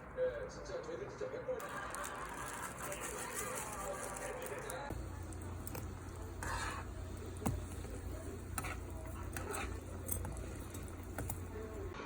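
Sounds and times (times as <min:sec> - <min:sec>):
utensils clinking on dishes: 0:01.6 - 0:12.0
steady low hum: 0:04.9 - 0:12.0.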